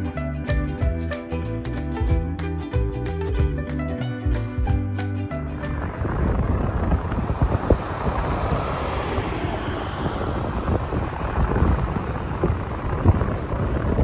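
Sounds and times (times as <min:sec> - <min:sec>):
strong wind buffeting microphone: 0:04.6 - 0:14.0.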